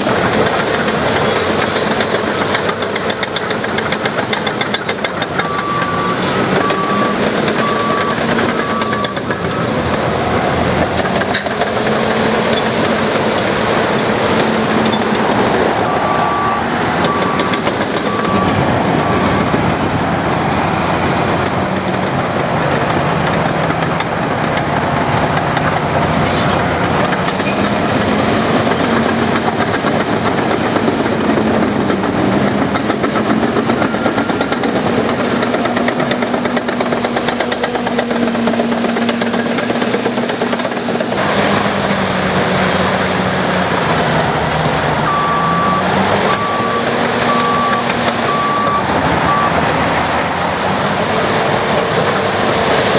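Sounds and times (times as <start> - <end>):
reversing alarm beeping: 0.0 - 21.5, 25.0 - 41.7, 42.7 - 50.1
diesel engine working: 0.0 - 52.9.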